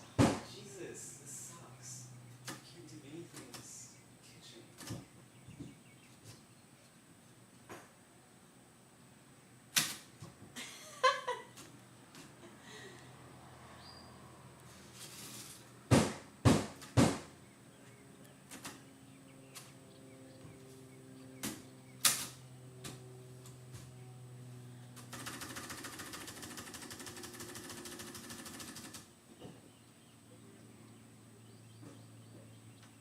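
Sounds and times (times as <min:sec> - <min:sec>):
loud sharp knocks: 0:00.2 - 0:00.5, 0:15.9 - 0:17.3
fast ratcheting clatter: 0:25.0 - 0:29.1.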